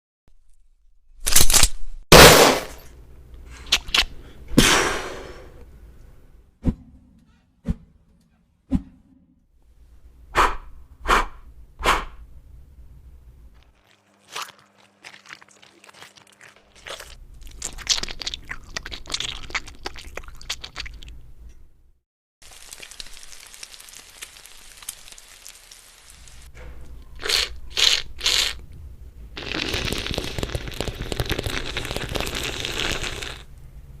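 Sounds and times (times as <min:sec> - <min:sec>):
crunching and crackling: 0:13.6 - 0:21.1, 0:29.4 - 0:33.4.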